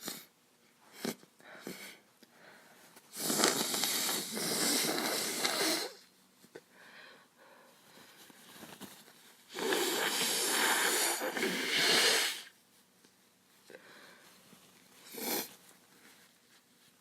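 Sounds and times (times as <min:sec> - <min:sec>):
woman blowing her nose: 0:03.1 - 0:06.1, 0:09.5 - 0:12.6, 0:15.0 - 0:15.6.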